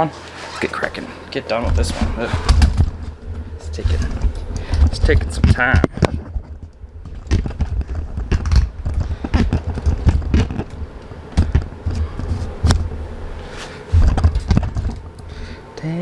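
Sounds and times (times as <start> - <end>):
plastic bumper knocks and scrapes: 1.6 - 10.8.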